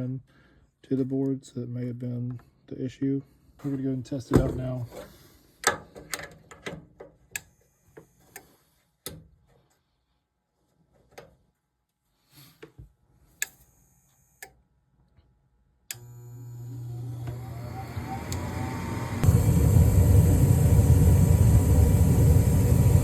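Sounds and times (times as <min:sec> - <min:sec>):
furnace fan motor humming: 0:15.9 - 0:23.0
rush of air: 0:19.2 - 0:23.0.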